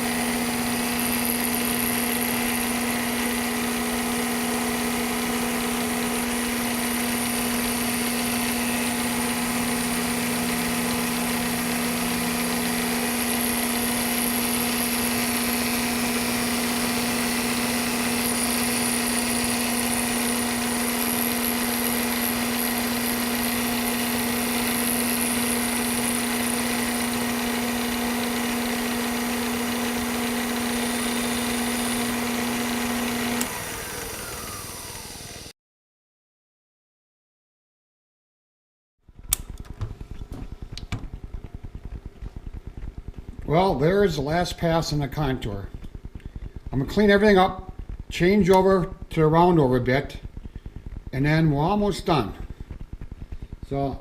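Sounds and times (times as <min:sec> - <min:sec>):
cutter high whine: 0:00.0 - 0:35.5, 0:39.1 - 0:54.0
milling machine humming: 0:00.0 - 0:35.5, 0:39.1 - 0:54.0.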